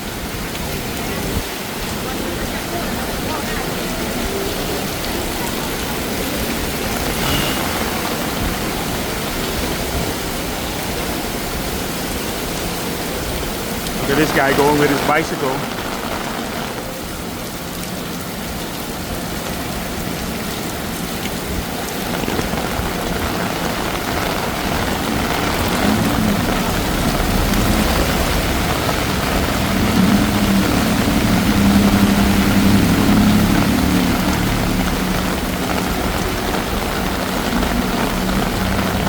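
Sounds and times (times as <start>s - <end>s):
heavy rain pouring: 0.0s - 39.0s
vehicle engine approaching: 4.2s - 11.8s, 24.7s - 39.0s.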